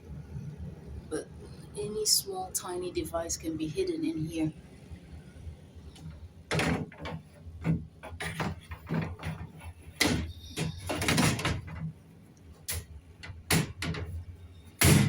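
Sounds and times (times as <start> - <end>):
panel knocks clunks and rattles: 6.0 - 15.0.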